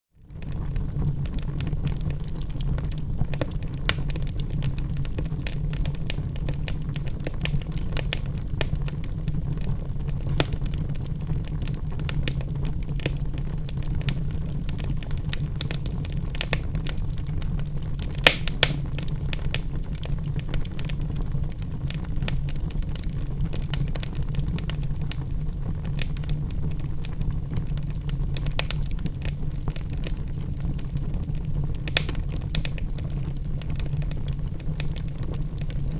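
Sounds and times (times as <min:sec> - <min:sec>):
wood fire crackling and popping: 0:00.2 - 0:35.9.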